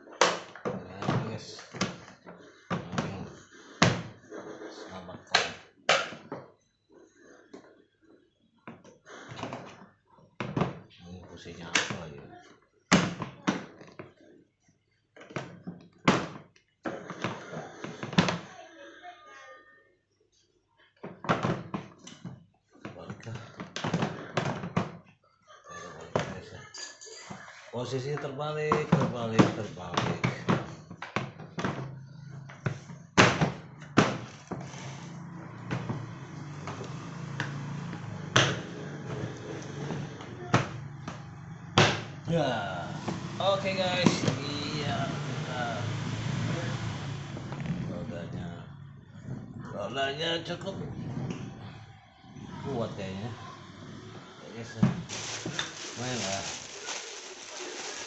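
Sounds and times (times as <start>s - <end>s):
plastic toolbox knocks and clunks: 21.0s - 22.0s.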